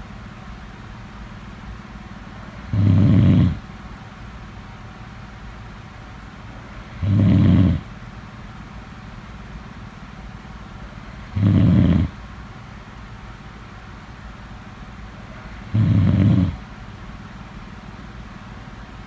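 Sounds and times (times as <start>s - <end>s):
steady low hum: 0.0s - 19.0s
person snoring: 2.7s - 3.6s, 7.0s - 7.8s, 11.3s - 12.1s, 15.7s - 16.6s.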